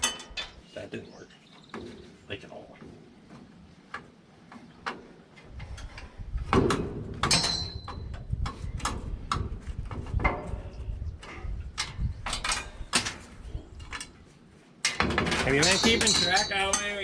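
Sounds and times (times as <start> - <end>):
metal knocks and clanks: 0.0 - 0.6, 4.8 - 10.7, 14.8 - 17.0
ringing metal clang: 7.2 - 8.1, 15.4 - 17.0.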